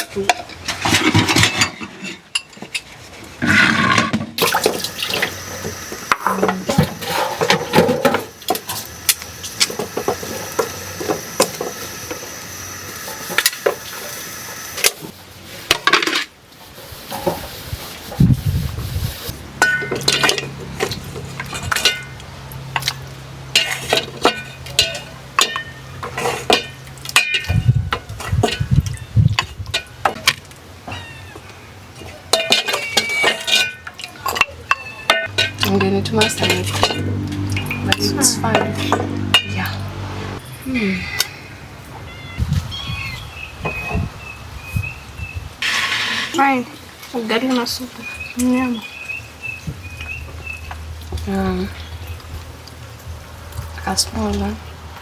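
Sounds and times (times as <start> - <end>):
dishes clinking and knocking: 0.0 - 4.8, 6.1 - 8.4, 19.6 - 22.2, 23.6 - 28.8, 32.0 - 39.6
water pouring and splashing: 3.2 - 40.6, 45.5 - 55.0.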